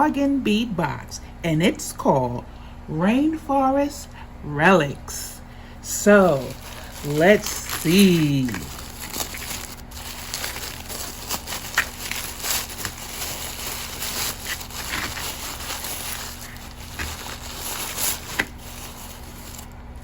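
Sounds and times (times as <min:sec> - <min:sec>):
low hum: 0:02.5 - 0:20.0
packaging rustling and crinkling: 0:06.1 - 0:20.0.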